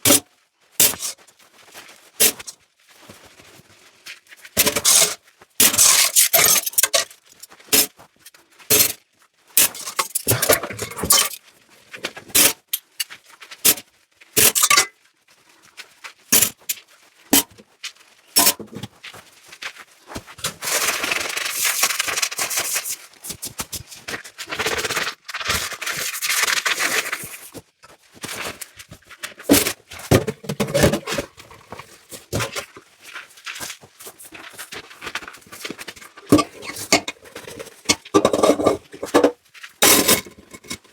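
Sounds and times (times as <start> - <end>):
scraping and rubbing: 4.6 - 7.9, 9.6 - 11.4, 18.4 - 19.0, 20.2 - 40.9
dishes clinking: 38.0 - 40.8.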